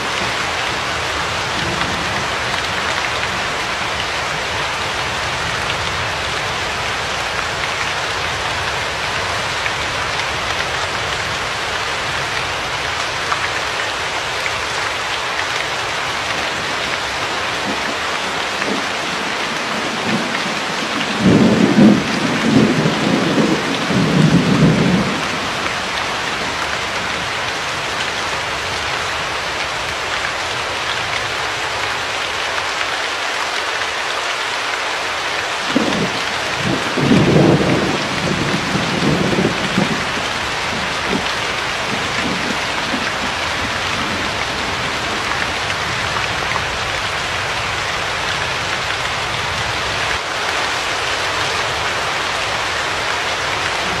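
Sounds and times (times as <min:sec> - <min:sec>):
rain hiss: 0:00.0 - 0:54.0
low rolls of thunder: 0:17.4 - 0:26.7, 0:35.7 - 0:46.5.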